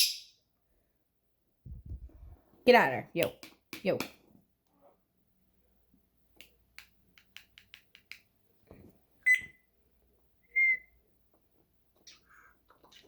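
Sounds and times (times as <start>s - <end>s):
parrot high whistles: 10.4s - 11.0s.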